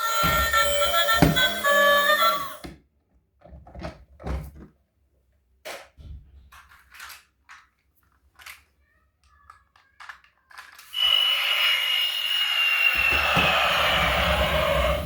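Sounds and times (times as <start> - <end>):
steady high electronic tone: 11.0 - 15.0.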